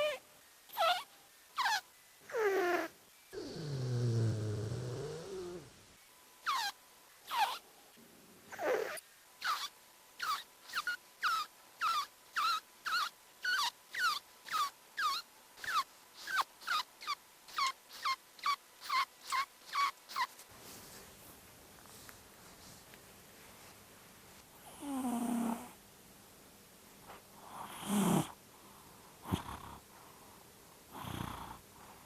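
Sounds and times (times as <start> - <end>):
sped-up cat snoring squeaks: 0.0 - 5.7, 6.4 - 7.6, 8.5 - 20.3, 24.7 - 25.7, 27.4 - 28.4, 29.3 - 29.8, 30.9 - 31.6
faint steady sound: 0.0 - 32.0.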